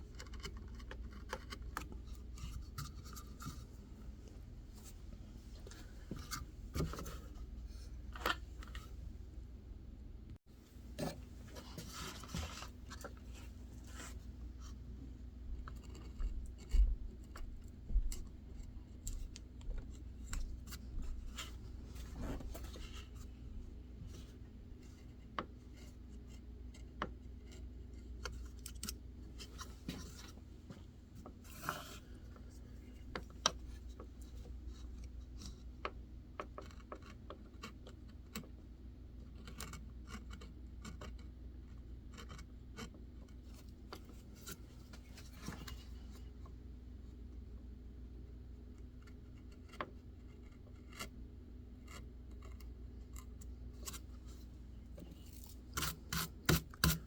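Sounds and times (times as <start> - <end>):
low steady hum: 0.0 - 57.0
carving tool scraping wood: 39.3 - 43.6, 48.8 - 54.4, 55.0 - 57.0.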